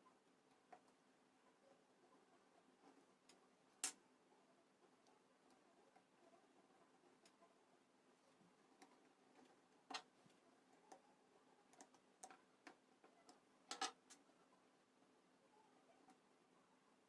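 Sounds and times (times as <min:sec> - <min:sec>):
clicks and taps of small objects: 0:08.8 - 0:10.2, 0:11.7 - 0:14.2.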